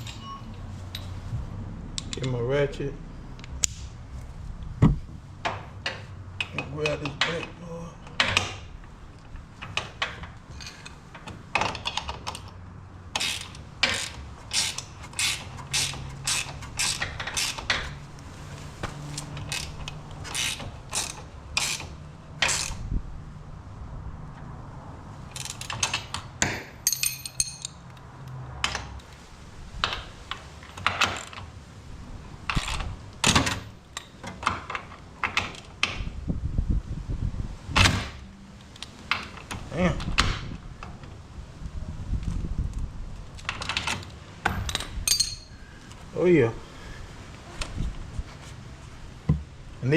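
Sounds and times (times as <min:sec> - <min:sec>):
socket ratchet wrench clicking: 0:13.2 - 0:17.9, 0:19.2 - 0:22.8.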